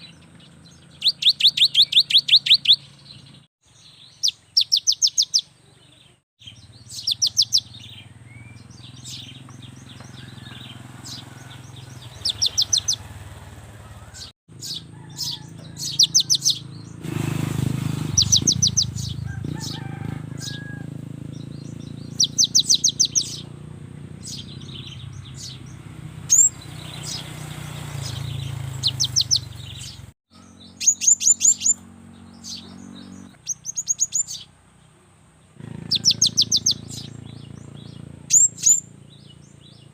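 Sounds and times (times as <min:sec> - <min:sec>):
bird singing fast trills: 0:00.0 - 0:39.9.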